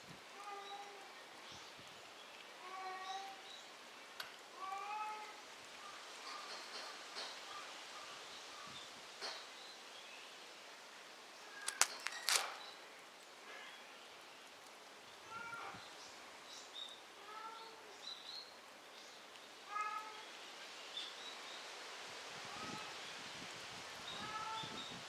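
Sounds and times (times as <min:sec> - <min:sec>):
sharp clicks: 0:11.6 - 0:12.6.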